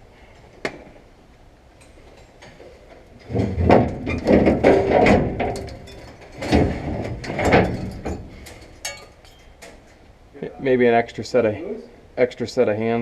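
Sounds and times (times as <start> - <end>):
metal grate scraping and clanking: 3.2 - 10.0.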